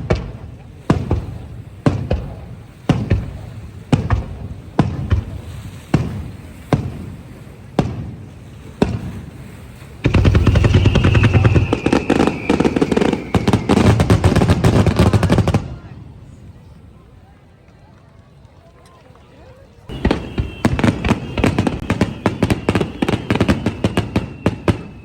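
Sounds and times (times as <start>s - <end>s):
firework bangs echoing: 0.0s - 15.9s, 19.9s - 25.0s
rapid crackling firework barrage: 0.0s - 16.2s, 19.9s - 25.0s
faint falling whistle: 10.1s - 14.4s, 19.9s - 25.0s.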